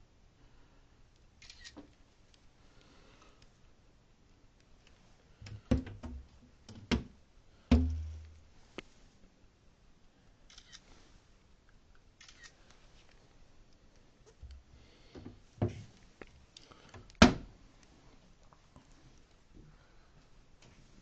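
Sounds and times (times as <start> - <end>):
dull thud: 7.7 - 8.4.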